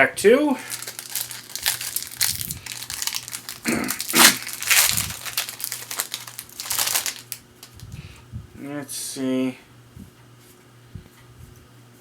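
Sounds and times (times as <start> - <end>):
foil wrapper crinkling and tearing: 0.6 - 7.8.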